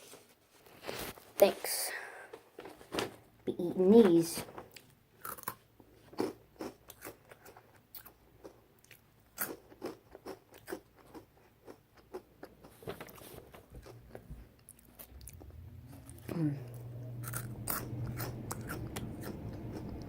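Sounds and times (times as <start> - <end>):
person chewing crunchy snacks: 4.7 - 12.8, 17.2 - 20.0.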